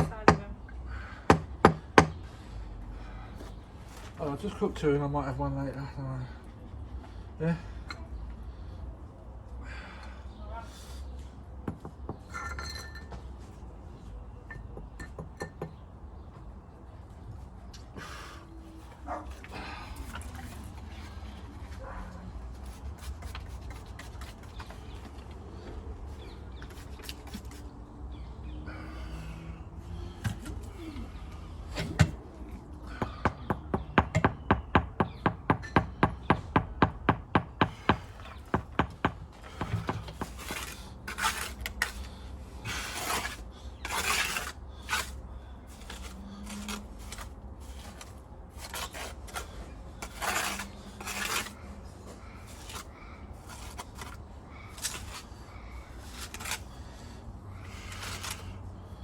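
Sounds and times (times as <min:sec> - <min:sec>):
scraping and rasping: 0:18.8 - 0:32.0, 0:39.4 - 0:59.0.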